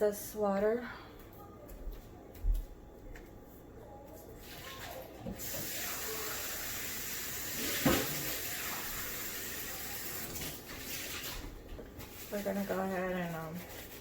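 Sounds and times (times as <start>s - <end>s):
water running into sink: 4.4s - 12.8s.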